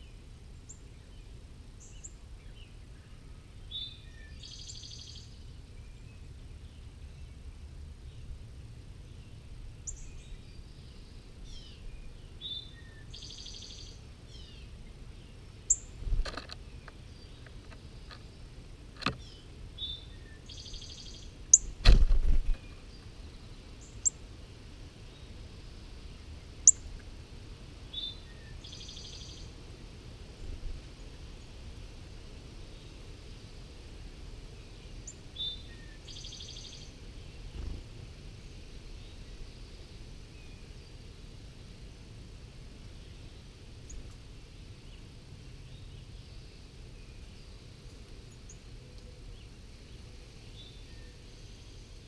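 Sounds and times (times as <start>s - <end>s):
songbirds singing and calling: 0.0s - 52.0s.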